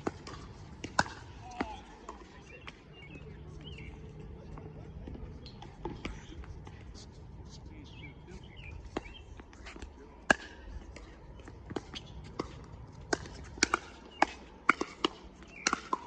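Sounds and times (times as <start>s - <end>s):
paddle striking ball: 0.0s - 2.2s
ball bouncing: 0.0s - 3.8s
footsteps on court: 0.0s - 16.0s.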